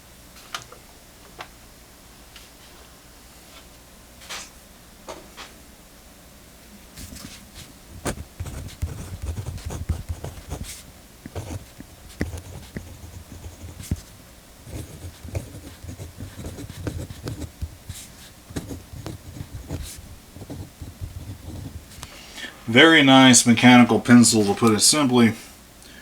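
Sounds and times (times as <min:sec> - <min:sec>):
pencil scratching on paper: 0:07.0 - 0:22.2.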